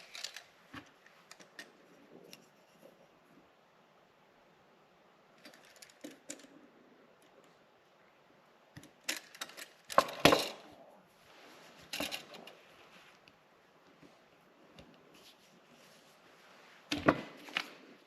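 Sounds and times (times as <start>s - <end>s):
hard objects clicking and knocking: 8.8s - 10.9s.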